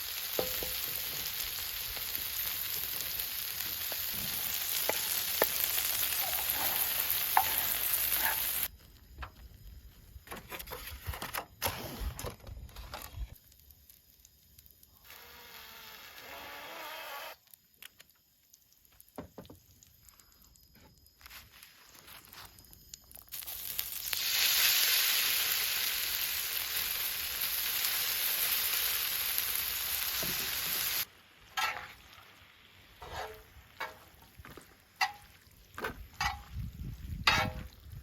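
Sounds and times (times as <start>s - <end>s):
food sizzling in frying: 0.0s - 8.7s, 23.1s - 38.0s
faint clicks and handling noises: 17.6s - 21.4s.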